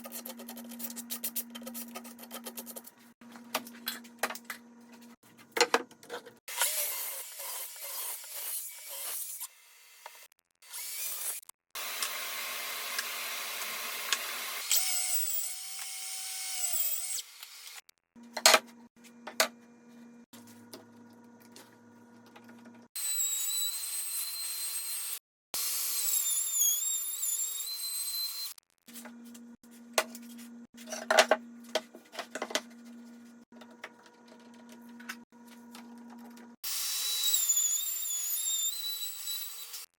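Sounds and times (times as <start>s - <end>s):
power tool cutting wood: 6.5s - 17.8s, 23.0s - 28.6s, 36.6s - 39.9s.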